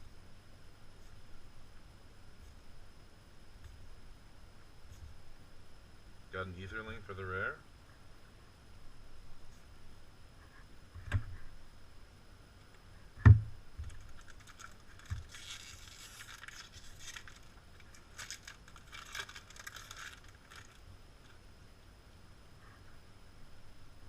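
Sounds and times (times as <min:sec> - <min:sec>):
foil wrapper crinkling and tearing: 0:13.8 - 0:21.4.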